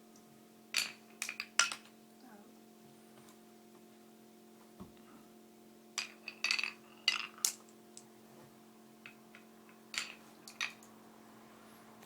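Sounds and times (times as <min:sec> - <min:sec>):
marbles clacking on a track: 0:00.8 - 0:01.9, 0:06.0 - 0:07.8, 0:09.0 - 0:10.9.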